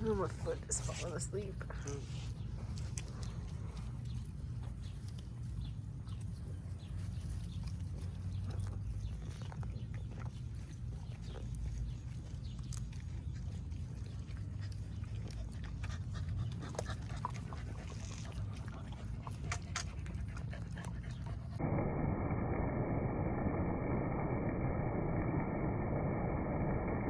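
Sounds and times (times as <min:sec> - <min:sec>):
dog panting: 0:00.0 - 0:21.6
low rumble: 0:00.0 - 0:27.0.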